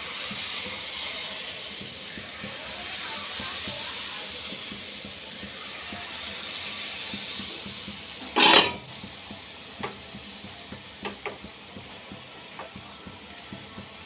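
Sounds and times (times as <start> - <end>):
frying in hot oil sizzle: 0.0 - 14.0
utensil clinking against pan: 8.4 - 8.8.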